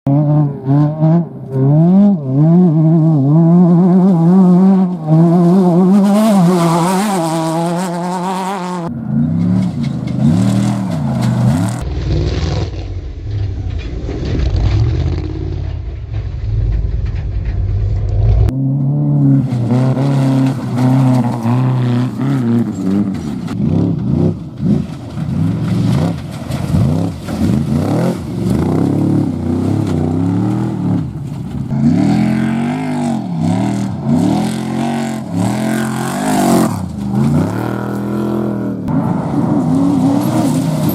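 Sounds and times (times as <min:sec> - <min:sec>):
race vehicle engines revving: 0:00.1 - 0:40.9
heavy low rumble: 0:11.8 - 0:18.6.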